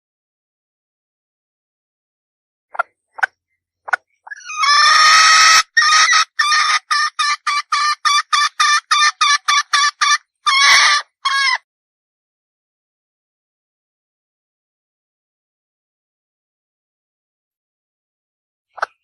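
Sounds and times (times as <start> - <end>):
hen clucking and squawking: 2.8 - 11.6, 18.8 - 19.0.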